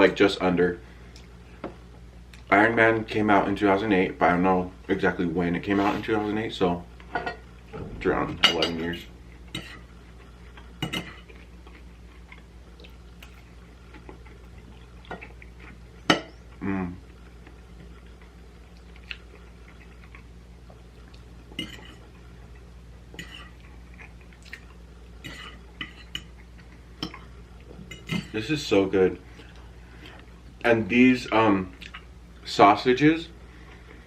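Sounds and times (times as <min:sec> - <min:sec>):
chewing: 0:09.8 - 0:27.8.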